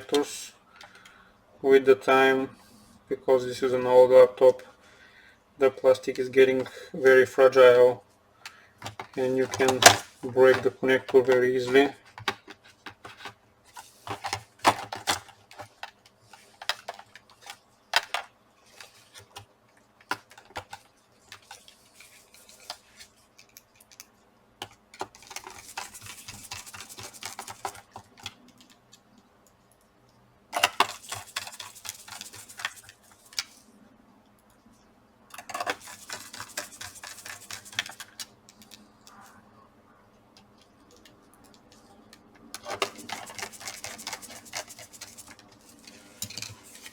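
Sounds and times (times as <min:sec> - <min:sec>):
plastic and metal parts clicking: 0:08.4 - 0:21.7, 0:23.4 - 0:29.0, 0:30.6 - 0:33.6, 0:40.4 - 0:46.9.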